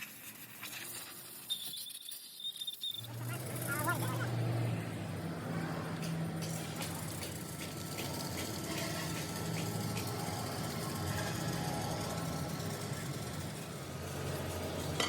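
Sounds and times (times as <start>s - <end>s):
engine idling: 3.1s - 15.0s.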